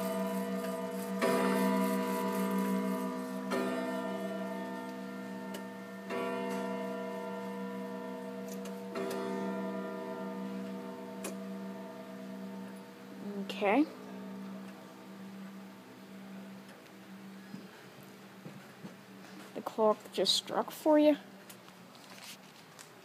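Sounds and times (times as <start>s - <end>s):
clock striking bongs: 0.0s - 12.7s.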